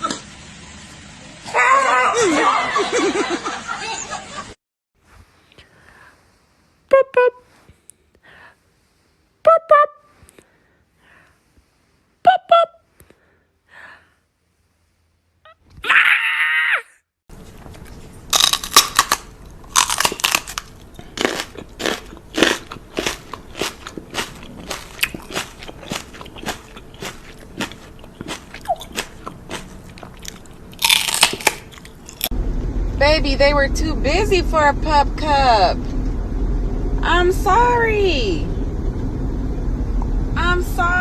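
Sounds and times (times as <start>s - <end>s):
crunchy chewing: 17.4s - 32.3s
falling pitched whine: 32.1s - 41.0s.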